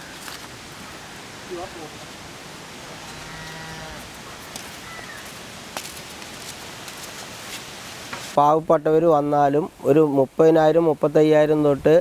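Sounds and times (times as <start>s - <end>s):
background hiss: 0.0s - 12.0s
cow mooing: 2.8s - 4.1s.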